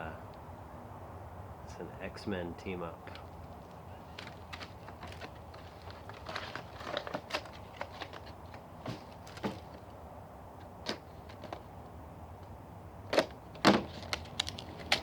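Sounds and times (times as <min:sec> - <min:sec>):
plastic packaging crinkling: 0:04.0 - 0:09.9, 0:13.7 - 0:15.0
sharp plastic clicks: 0:13.1 - 0:15.0.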